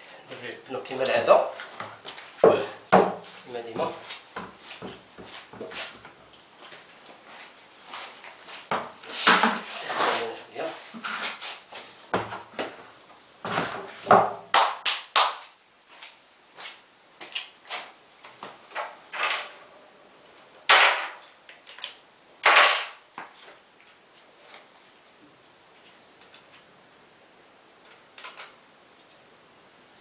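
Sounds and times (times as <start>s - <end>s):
scraping or rustling: 7.3s - 12.4s.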